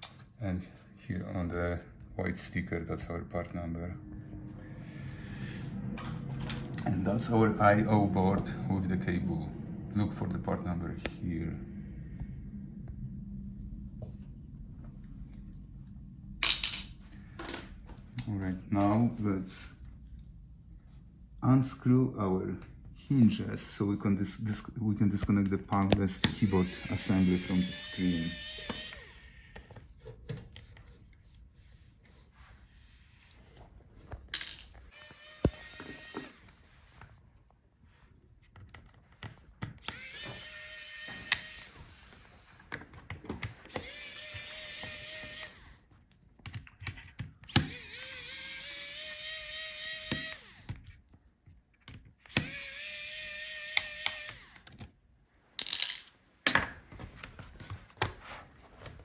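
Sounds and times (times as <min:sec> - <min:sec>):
electric screwdriver whining: 0:26.2 - 0:30.0, 0:34.9 - 0:36.6, 0:39.8 - 0:42.5, 0:43.6 - 0:45.9, 0:47.5 - 0:50.8, 0:52.3 - 0:54.9
screws and tool clicking: 0:34.4 - 0:36.5, 0:39.7 - 0:41.8, 0:43.7 - 0:45.7, 0:46.5 - 0:50.8, 0:52.3 - 0:54.9.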